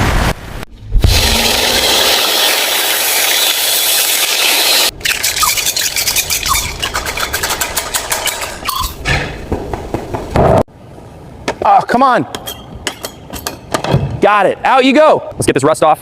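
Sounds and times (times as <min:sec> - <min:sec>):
short squeaks: 0:05.0 - 0:07.5.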